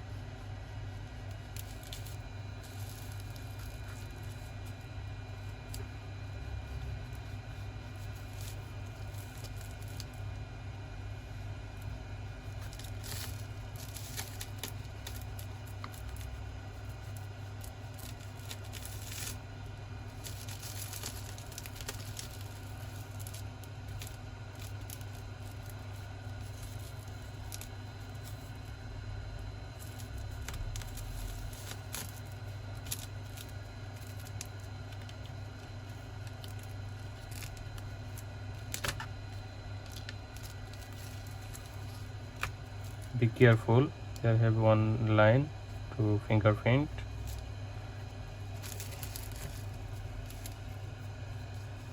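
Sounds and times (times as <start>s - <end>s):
steady low hum: 0.0s - 51.9s.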